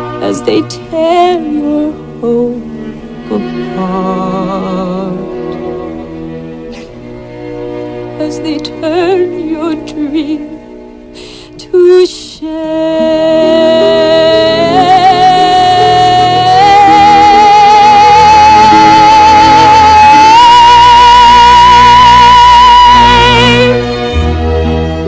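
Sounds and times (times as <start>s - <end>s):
person singing long high note: 12.4s - 23.8s
orchestral accompaniment: 12.4s - 25.0s.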